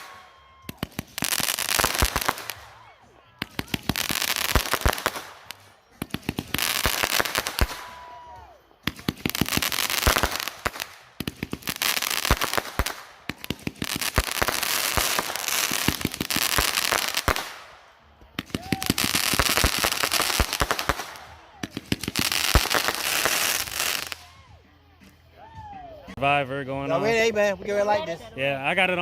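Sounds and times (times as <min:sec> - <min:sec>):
firework whistle: 0:00.0 - 0:17.7
firework cake crackling bangs: 0:00.0 - 0:24.3.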